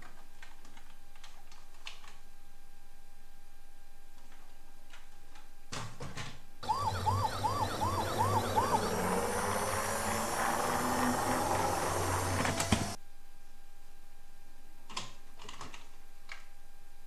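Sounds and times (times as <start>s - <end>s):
toy siren yelping: 6.6s - 13.0s.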